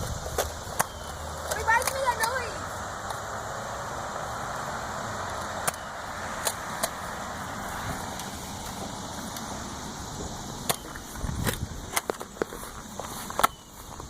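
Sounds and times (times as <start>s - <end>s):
vehicle rushing on road: 0.0s - 14.0s
sharp clicks: 0.3s - 2.4s, 5.3s - 7.0s.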